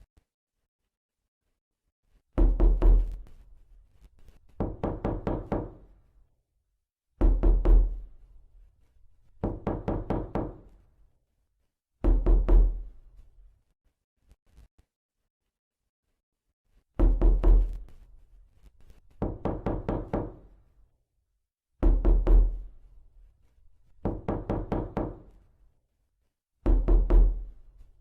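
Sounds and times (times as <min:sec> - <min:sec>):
knocking on a door: 0:02.4 - 0:03.2, 0:04.5 - 0:05.9, 0:07.2 - 0:08.1, 0:09.4 - 0:10.7, 0:12.0 - 0:12.9, 0:17.0 - 0:17.8, 0:19.2 - 0:20.5, 0:21.8 - 0:22.7, 0:24.0 - 0:25.3, 0:26.6 - 0:27.5.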